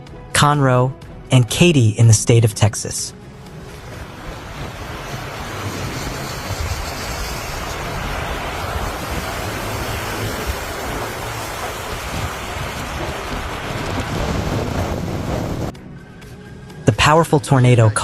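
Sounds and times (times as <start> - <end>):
strong wind rushing: 3.1 - 16.2
wind buffeting microphone: 3.2 - 15.7.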